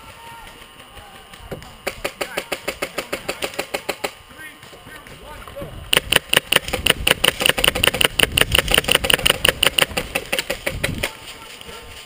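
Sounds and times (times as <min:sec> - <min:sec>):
airsoft gun rapid fire: 0:00.5 - 0:04.2, 0:05.9 - 0:11.2.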